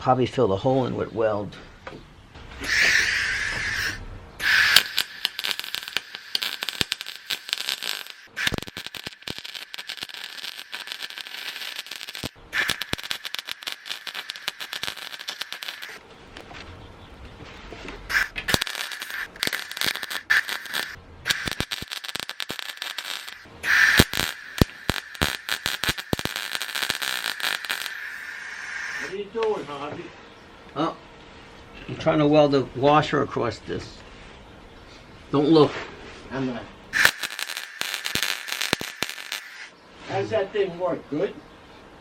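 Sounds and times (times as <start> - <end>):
arc welding crackling: 2.6 - 29.2, 36.4 - 39.7.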